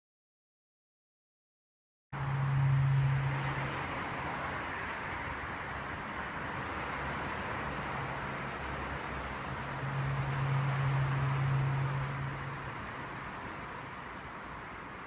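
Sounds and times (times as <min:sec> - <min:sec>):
rail station background noise: 0:03.2 - 0:15.0.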